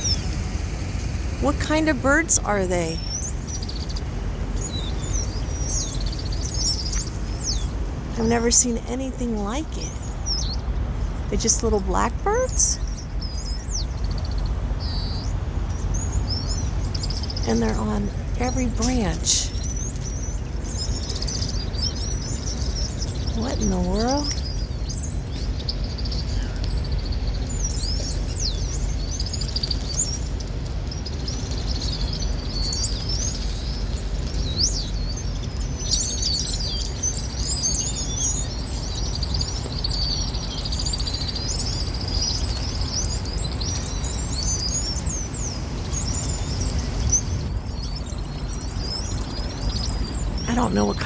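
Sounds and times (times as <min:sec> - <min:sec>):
steady low rumble: 0:00.0 - 0:20.8
flock of birds chirping: 0:00.0 - 0:51.0.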